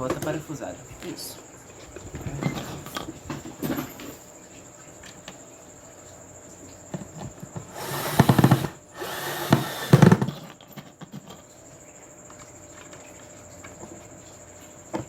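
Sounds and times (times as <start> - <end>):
power drill driving screws: 7.7 - 10.5.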